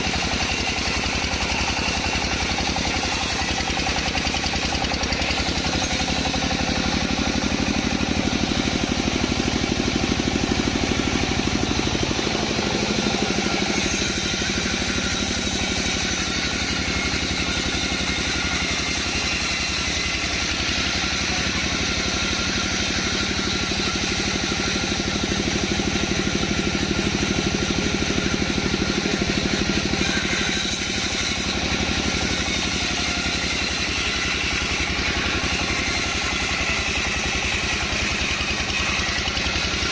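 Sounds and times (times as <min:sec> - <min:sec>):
engine drone: 0:00.0 - 0:39.9.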